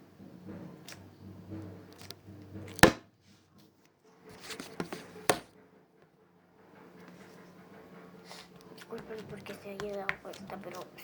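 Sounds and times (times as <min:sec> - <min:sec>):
phone knocking on a surface: 0:01.2 - 0:03.1.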